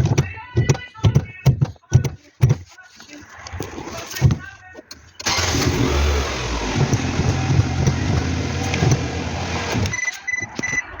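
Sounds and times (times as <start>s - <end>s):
car engine running: 5.2s - 10.0s
short high beeps: 9.9s - 11.0s.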